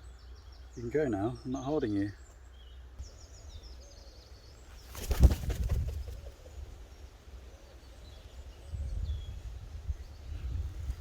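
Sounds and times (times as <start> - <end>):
gull wings flapping: 4.9 - 6.3
wind rumble on microphone: 5.2 - 6.8, 8.4 - 11.0.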